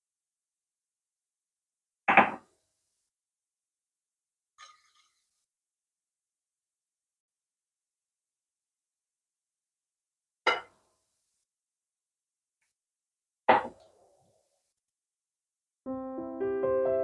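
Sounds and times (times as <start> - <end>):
piano music: 15.9 - 17.0.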